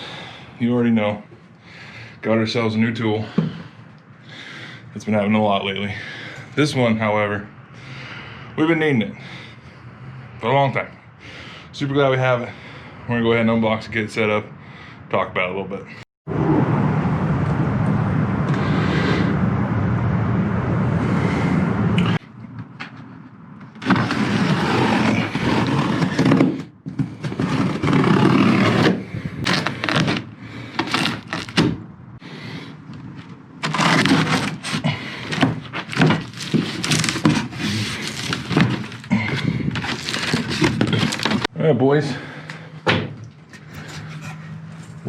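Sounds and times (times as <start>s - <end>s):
packing knocks and cracks: 23.7s - 31.8s, 33.6s - 41.5s
cardboard box scraping and rustling: 23.8s - 31.7s, 33.6s - 41.5s.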